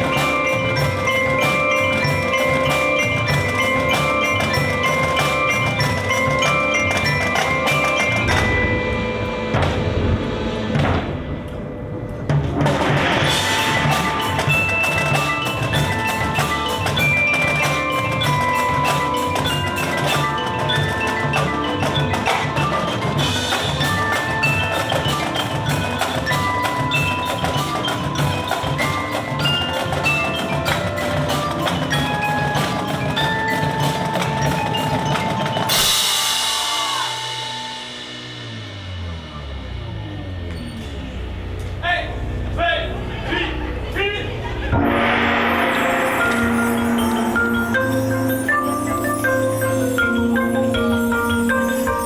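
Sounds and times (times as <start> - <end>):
steady drum beat: 0.0 - 43.6, 44.2 - 52.0
mallet percussion notes: 0.0 - 52.0
cymbal-like wash: 35.8 - 40.3.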